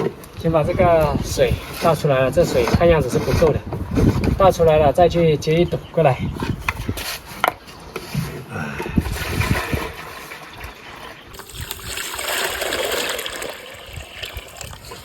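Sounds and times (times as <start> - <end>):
water poured from bucket splashing: 9.0 - 15.0.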